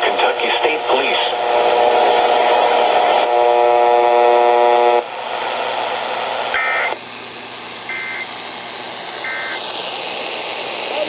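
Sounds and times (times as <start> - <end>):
steady buzzing tone: 0.0 - 5.1, 9.2 - 9.6
radio static hiss: 0.0 - 7.0, 9.1 - 11.0.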